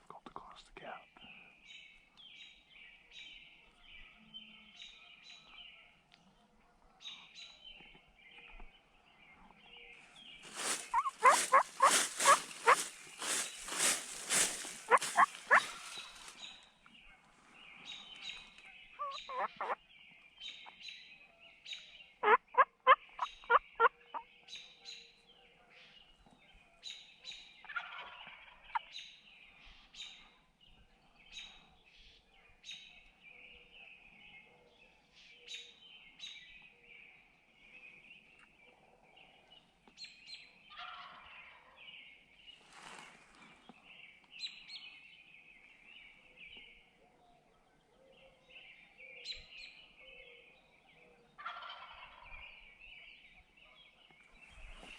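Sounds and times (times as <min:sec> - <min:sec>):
songbirds chirping: 0:00.0 - 0:54.9
turkey gobbling: 0:10.5 - 0:16.3, 0:19.0 - 0:19.8, 0:22.2 - 0:23.9, 0:51.4 - 0:52.2.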